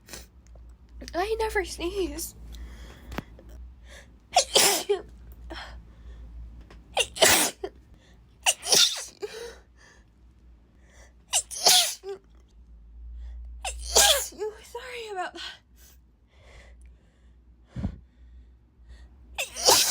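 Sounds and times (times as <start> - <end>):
woman sneezing: 4.4 - 4.9, 7.0 - 7.6, 8.4 - 9.4, 11.3 - 12.1, 13.7 - 14.6, 19.4 - 19.9.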